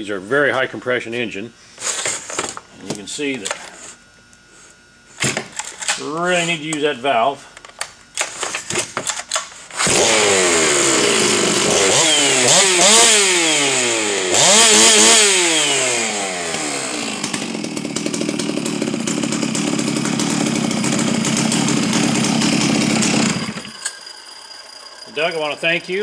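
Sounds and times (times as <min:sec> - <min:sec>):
chainsaw revving and idling: 0:09.8 - 0:23.8.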